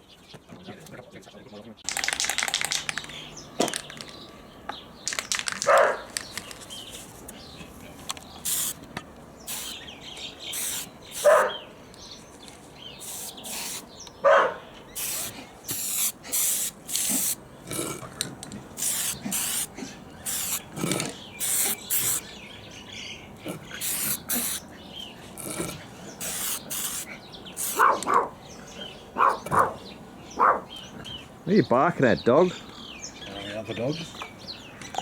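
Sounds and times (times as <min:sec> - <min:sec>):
dog barking: 0:05.7 - 0:06.1, 0:11.2 - 0:11.6, 0:14.2 - 0:14.6, 0:27.7 - 0:28.4, 0:29.2 - 0:30.7
spray paint can hissing: 0:08.4 - 0:08.9, 0:09.5 - 0:09.8, 0:10.5 - 0:11.4, 0:13.0 - 0:13.9, 0:15.0 - 0:17.4, 0:18.8 - 0:20.7, 0:21.4 - 0:22.2, 0:23.8 - 0:24.6, 0:26.2 - 0:27.8.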